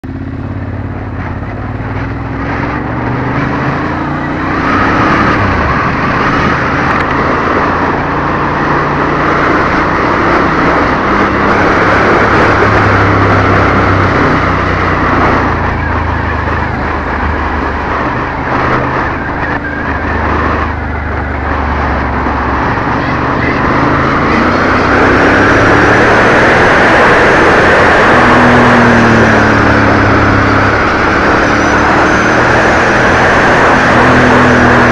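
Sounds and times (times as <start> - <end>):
motorcycle engine running: 0.0 - 34.9
wind rush on microphone: 0.5 - 34.9.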